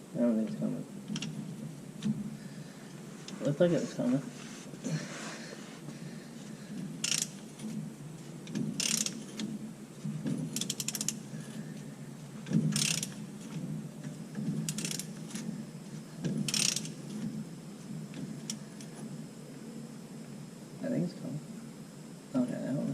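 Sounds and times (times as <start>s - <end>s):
socket ratchet clicking: 7.0s - 7.4s, 8.5s - 9.3s, 10.6s - 11.2s, 12.7s - 13.2s, 14.7s - 15.1s, 16.4s - 17.0s.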